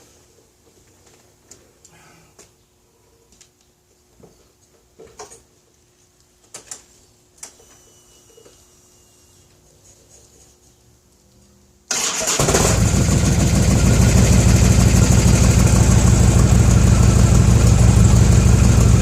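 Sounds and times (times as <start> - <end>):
starter motor cranking: 11.9 - 13.2
motorcycle engine idling: 12.5 - 19.0.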